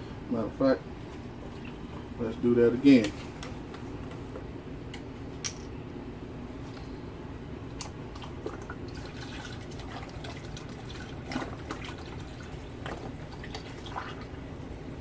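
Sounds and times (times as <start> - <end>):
drips and small splashes: 1.4 - 2.1, 7.8 - 14.5.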